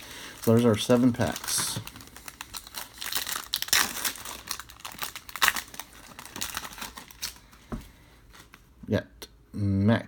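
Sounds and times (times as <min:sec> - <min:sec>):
foil wrapper crinkling and tearing: 0:00.0 - 0:07.6.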